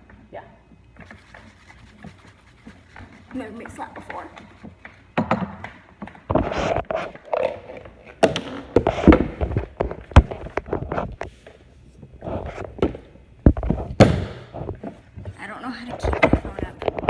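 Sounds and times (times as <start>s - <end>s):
rustling of handled objects: 1.0s - 5.2s
objects knocking and tapping: 1.9s - 11.4s, 12.4s - 15.3s.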